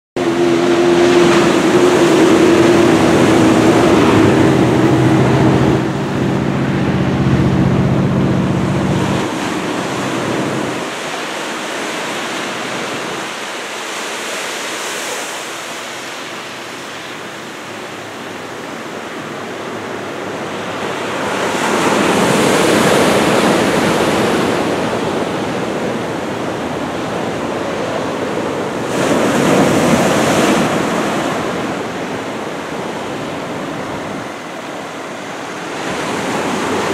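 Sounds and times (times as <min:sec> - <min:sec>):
vehicle engine humming: 0:00.2 - 0:10.8
wind buffeting microphone: 0:00.2 - 0:13.4
surf breaking on shore: 0:00.2 - 0:36.9.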